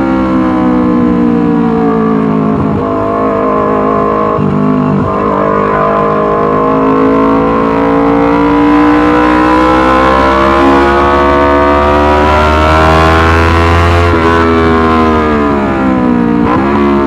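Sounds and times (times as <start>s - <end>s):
loud motorcycle engine revving: 0.0s - 17.0s.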